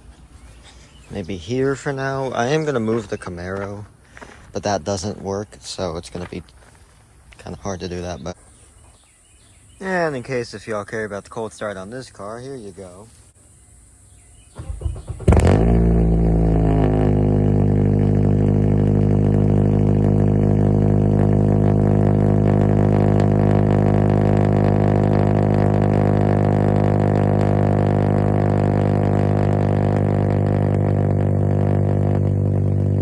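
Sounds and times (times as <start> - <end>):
car engine starting and idling: 14.4 - 33.0.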